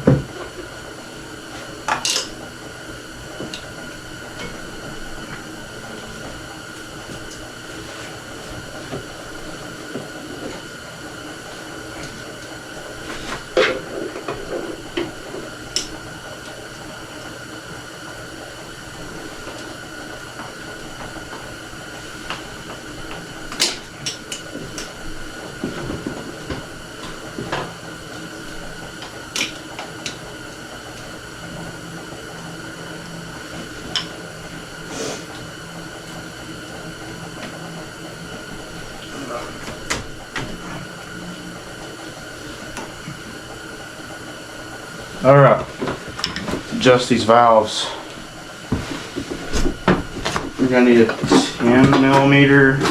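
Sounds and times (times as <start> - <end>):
steady background hum: 0.0 - 52.9.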